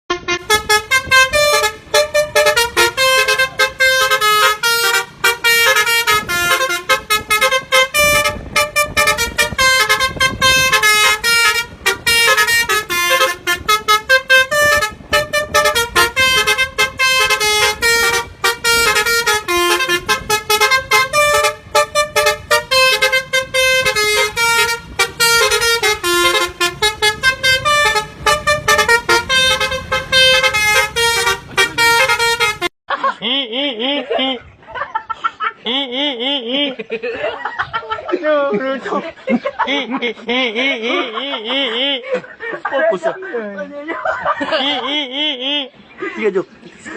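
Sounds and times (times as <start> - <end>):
multi-trumpet bus horn melody: 0.1 - 32.7.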